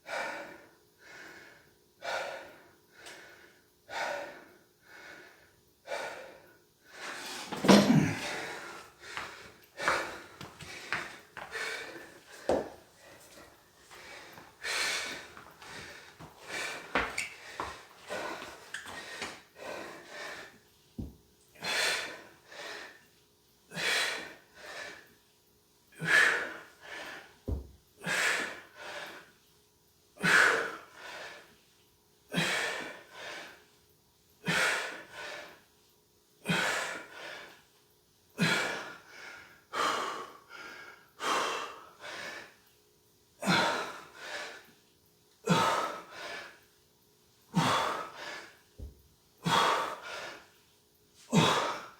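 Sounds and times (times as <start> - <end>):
man breathing hard: 0.0 - 20.7, 21.6 - 23.1, 23.7 - 25.1, 26.0 - 27.3, 28.0 - 29.3, 32.3 - 33.7, 34.4 - 35.6, 36.4 - 37.6, 38.4 - 42.7, 43.4 - 44.8, 45.5 - 46.7, 47.5 - 50.6, 51.3 - 51.9.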